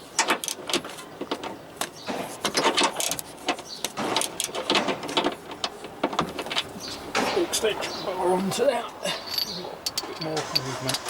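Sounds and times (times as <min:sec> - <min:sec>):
metal hand tools clinking: 0:09.0 - 0:11.0.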